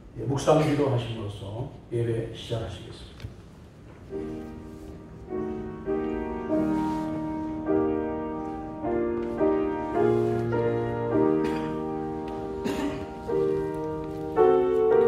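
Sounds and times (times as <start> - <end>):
piano playing soft chords: 0.0 - 15.0.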